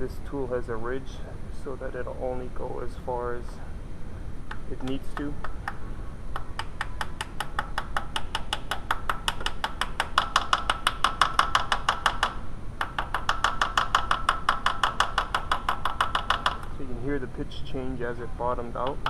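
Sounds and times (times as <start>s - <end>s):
rapid hammer taps on metal tool: 6.4s - 16.8s.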